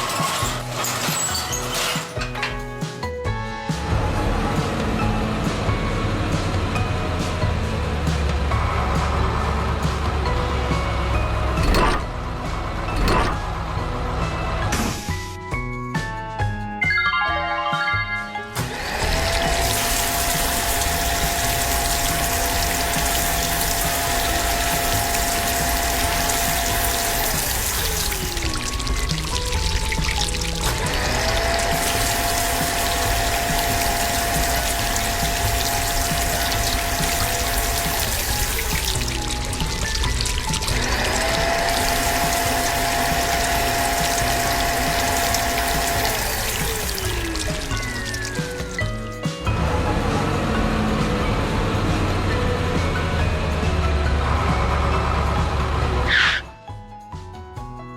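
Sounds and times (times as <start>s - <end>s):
motor whine: 11.6s - 12.1s, 30.7s - 48.3s
ratchet-like clatter: 11.6s - 12.1s, 13.0s - 13.4s.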